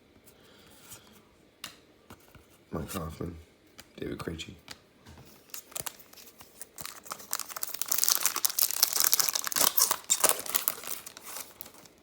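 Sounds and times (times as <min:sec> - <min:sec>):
wrapper tearing and crinkling: 0:05.4 - 0:12.0.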